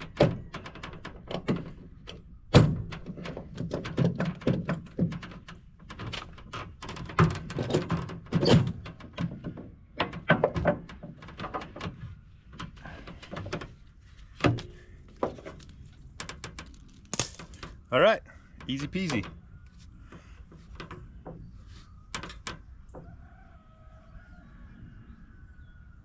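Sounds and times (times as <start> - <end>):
knocks on wooden trusses: 0.0 - 17.8.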